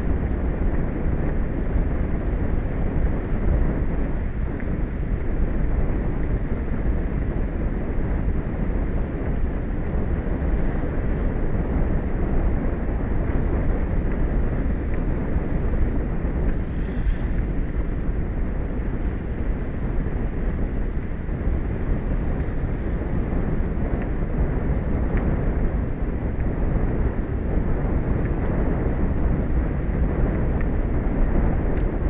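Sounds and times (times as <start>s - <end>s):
wind buffeting microphone: 0.0s - 32.0s
ocean waves: 13.2s - 26.6s.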